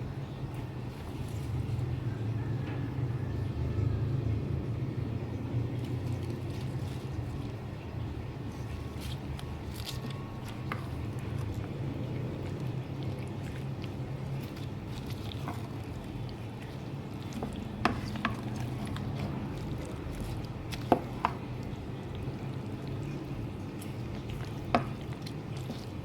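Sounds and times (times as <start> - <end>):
steady low hum: 0.0 - 26.0
wet handling of food: 0.0 - 26.0
utensil clicks and taps: 9.1 - 11.8, 12.4 - 23.0, 23.7 - 26.0.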